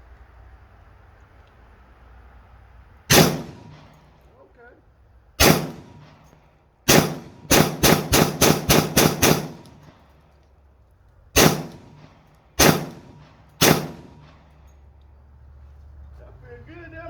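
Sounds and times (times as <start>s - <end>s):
pistol shots: 3.1s - 4.0s, 5.4s - 6.2s, 6.9s - 10.0s, 11.4s - 14.5s.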